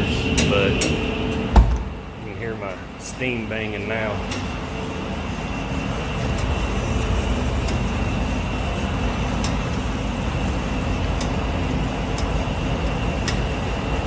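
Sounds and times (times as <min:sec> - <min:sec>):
steam rushing low rumble: 0:00.0 - 0:14.0
steam banging knocks: 0:00.2 - 0:02.3.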